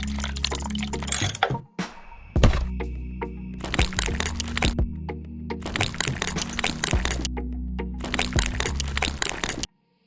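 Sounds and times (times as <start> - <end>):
background music with low tone: 0.0 - 10.0.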